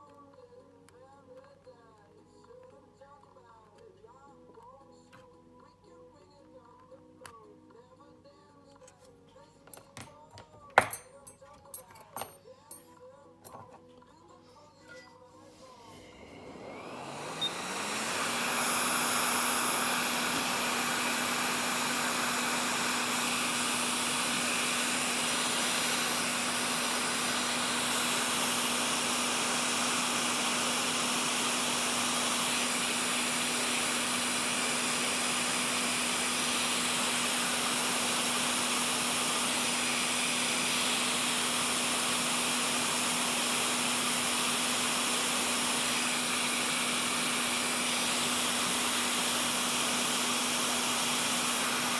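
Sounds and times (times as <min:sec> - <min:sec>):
blower fan hum: 0:15.3 - 0:51.9
hot air blower hissing: 0:15.4 - 0:51.9.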